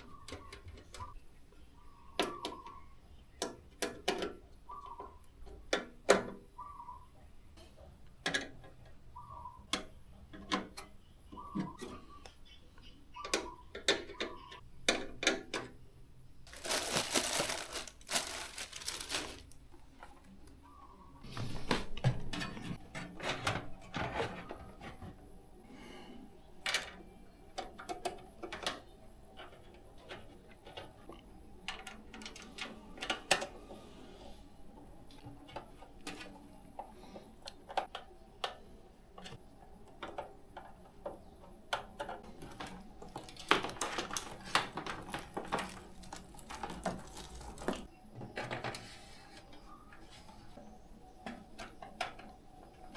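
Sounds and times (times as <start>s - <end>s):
rustling: 16.5s - 19.9s, 42.3s - 47.9s.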